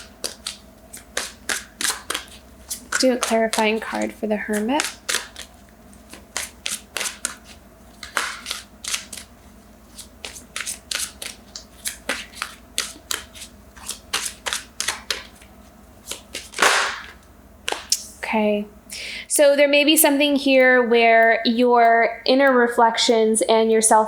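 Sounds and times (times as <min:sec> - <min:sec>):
cards being shuffled: 0:00.0 - 0:18.1.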